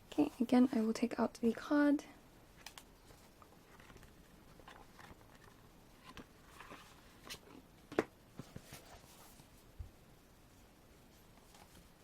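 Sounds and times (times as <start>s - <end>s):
card and paper rustling: 2.6s - 7.5s.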